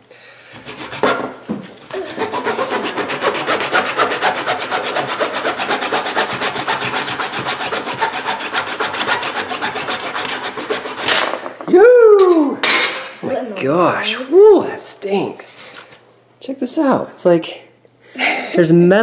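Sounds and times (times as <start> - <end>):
blade sawing rasping: 0.5 - 11.1.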